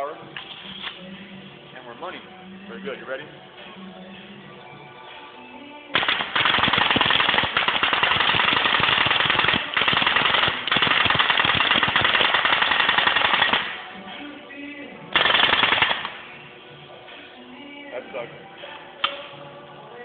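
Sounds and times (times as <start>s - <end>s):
staple gun firing rapidly: 6.0s - 13.8s, 15.2s - 16.2s.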